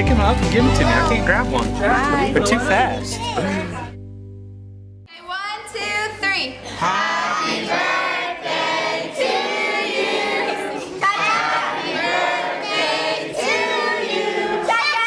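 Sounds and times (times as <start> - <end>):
adults and children singing: 6.6 - 15.0.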